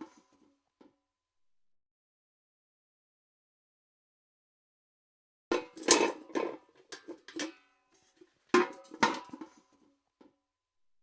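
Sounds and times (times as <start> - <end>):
metal bucket clanking: 5.5 - 9.6.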